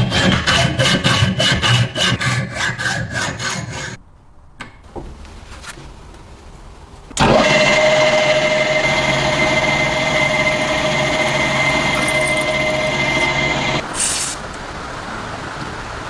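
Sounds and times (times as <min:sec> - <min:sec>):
power tool motor whining: 0:07.2 - 0:14.4.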